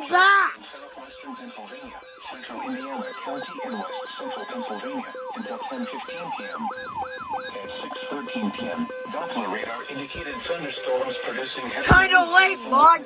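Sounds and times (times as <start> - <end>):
yelping siren tone: 0.0 - 0.6, 1.6 - 13.0
steady alert tone: 6.6 - 13.0.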